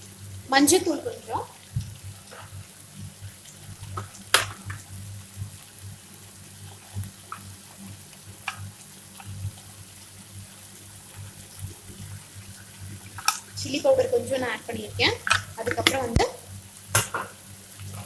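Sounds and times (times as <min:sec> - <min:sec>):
onions sizzling in a pan: 0:00.0 - 0:18.0.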